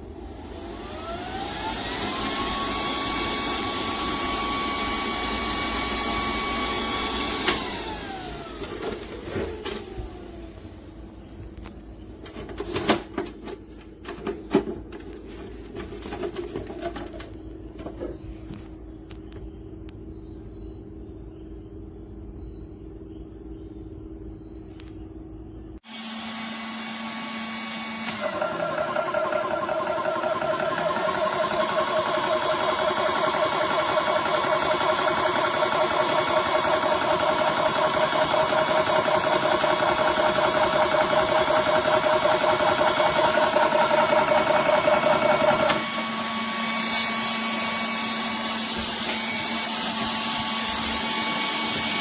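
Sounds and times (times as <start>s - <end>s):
motor drone: 0.0s - 8.6s, 25.8s - 52.0s
air compressor whining: 0.0s - 18.7s, 25.8s - 52.0s.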